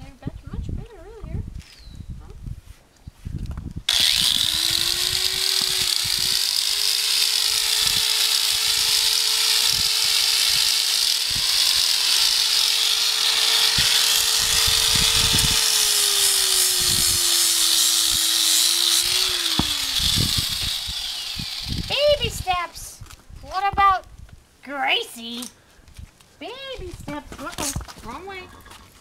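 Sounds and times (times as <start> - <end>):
angle grinder whining: 3.9 - 22.6.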